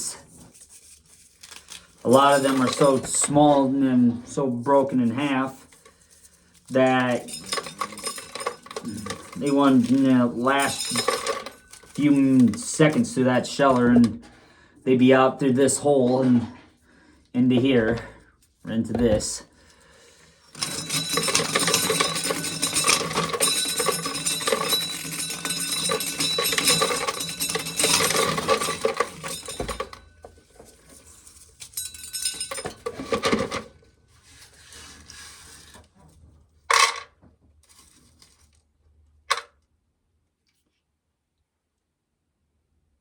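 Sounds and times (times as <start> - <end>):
corn kernels rattling into container: 1.3 - 3.5, 6.7 - 13.8, 20.6 - 30.0.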